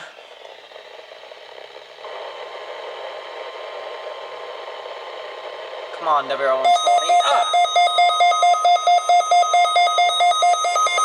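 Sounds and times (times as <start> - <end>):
radio static hiss: 2.0 - 6.6.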